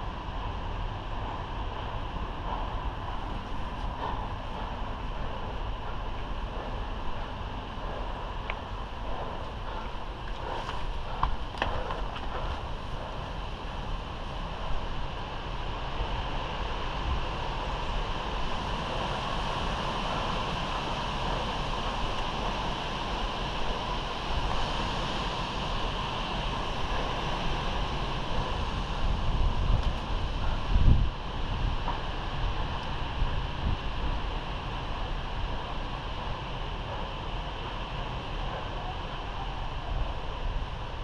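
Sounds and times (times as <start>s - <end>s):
wind noise on microphone: 0.0s - 41.0s.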